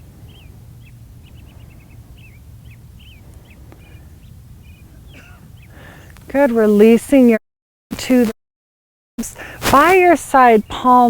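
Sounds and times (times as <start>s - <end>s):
small birds chirping: 0.0s - 7.0s
low outdoor rumble: 0.0s - 7.4s.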